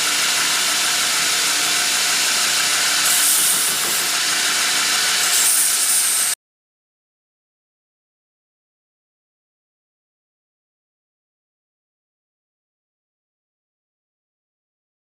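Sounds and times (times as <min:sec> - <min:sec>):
power grinder grinding metal: 0:00.0 - 0:06.4.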